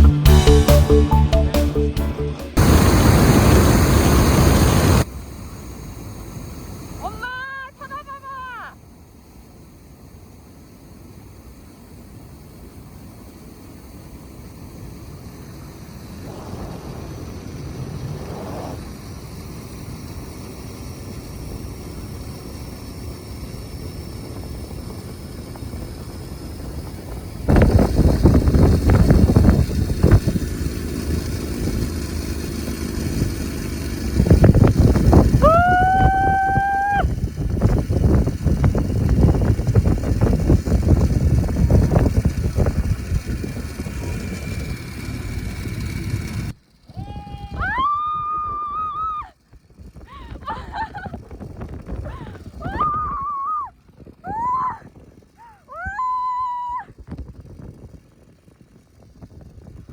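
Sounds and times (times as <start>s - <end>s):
wavering high tone sliding upward: 0.0s - 3.7s
faint steady whine: 2.5s - 59.9s
wind buffeting microphone: 2.6s - 5.1s, 15.0s - 20.4s, 23.8s - 59.9s
rushing wind and cable noise: 2.6s - 9.4s, 10.1s - 59.9s.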